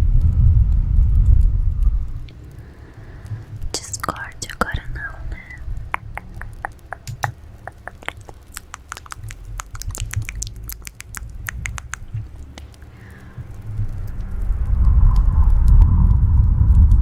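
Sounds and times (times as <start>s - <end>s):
low steady rumble: 0.0s - 8.6s, 9.2s - 17.0s
wet mouth clicks and lip smacks: 3.6s - 14.3s.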